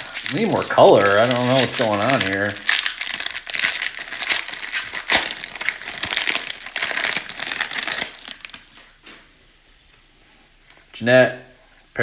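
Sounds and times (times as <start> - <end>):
foil wrappers crinkling: 0.0 - 9.2
wrapper snaps: 0.0 - 9.2.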